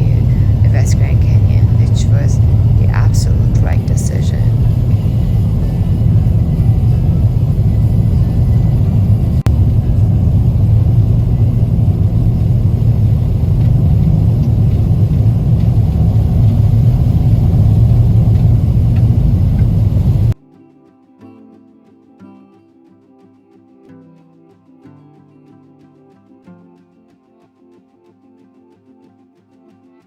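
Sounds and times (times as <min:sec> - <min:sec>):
car road rumble: 0:00.0 - 0:20.4.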